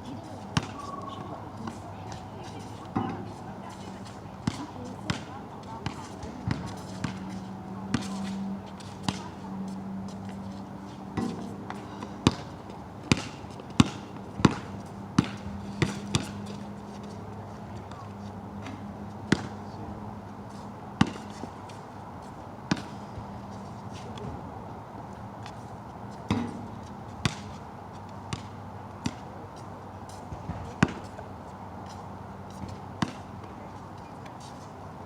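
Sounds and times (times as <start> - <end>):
basketball bouncing on wet court: 4.4 - 8.3, 11.2 - 12.5, 13.1 - 16.6, 19.3 - 19.6, 22.7 - 23.0, 26.3 - 27.5, 28.3 - 29.2, 30.3 - 31.0, 33.0 - 33.2.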